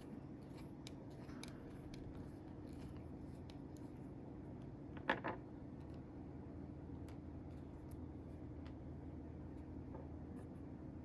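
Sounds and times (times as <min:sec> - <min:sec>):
light clicks of small parts: 0:00.0 - 0:05.2
low steady hum: 0:00.0 - 0:11.0.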